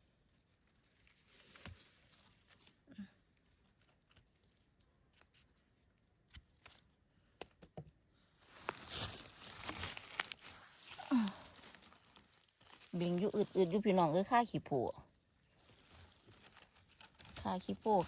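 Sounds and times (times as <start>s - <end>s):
dry leaves rustling: 8.5s - 14.9s, 15.5s - 18.0s
small twigs snapping: 8.6s - 13.4s, 15.6s - 18.0s.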